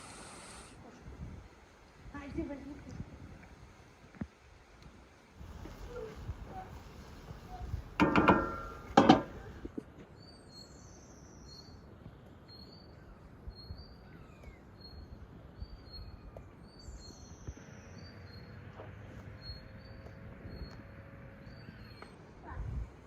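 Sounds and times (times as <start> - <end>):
small birds chirping: 8.7 - 23.0.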